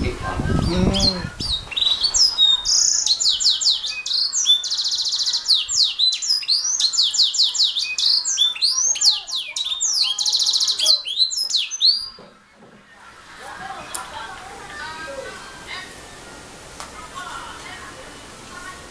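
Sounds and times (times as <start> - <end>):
canary singing trills: 0.3 - 12.3.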